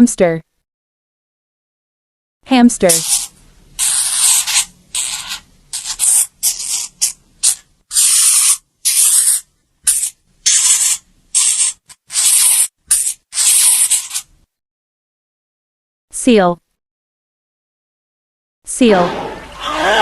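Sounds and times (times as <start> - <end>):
hamster hissing: 2.8 - 14.3.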